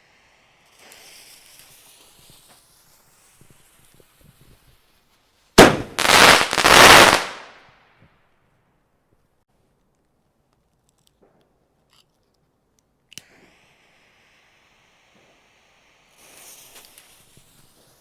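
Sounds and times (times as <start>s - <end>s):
firework crackling: 0.0s - 4.8s, 5.6s - 7.6s, 13.3s - 18.0s
faint firework hiss: 0.0s - 7.8s, 13.0s - 18.0s
firework bang: 5.6s - 7.4s.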